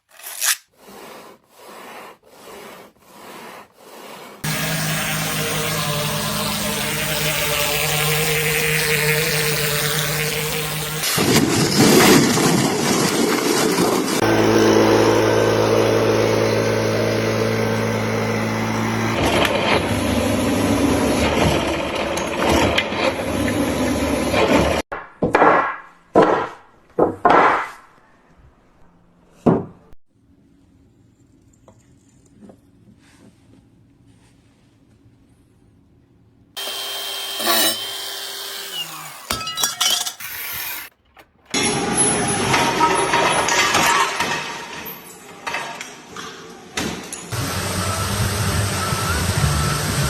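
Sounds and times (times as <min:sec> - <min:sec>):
machinery engines running: 0:04.4 - 0:11.1, 0:12.5 - 0:24.8, 0:46.5 - 0:50.0.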